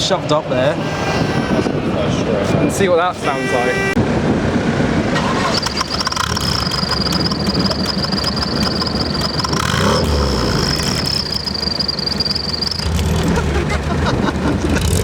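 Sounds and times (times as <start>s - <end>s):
car engine rumble: 3.8s - 15.0s
high whistle from exhaust: 6.0s - 13.2s.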